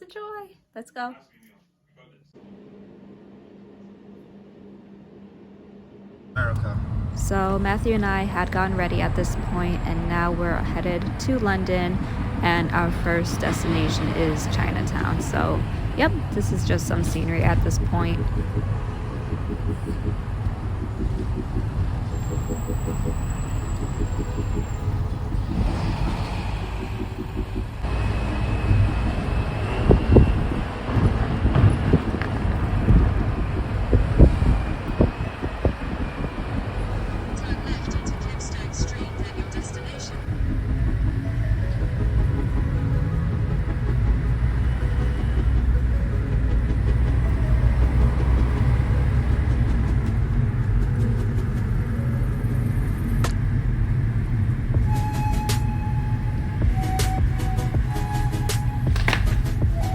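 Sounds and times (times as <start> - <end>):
low thumps: 6.4 - 51.8
vehicle road rumble: 6.4 - 59.9.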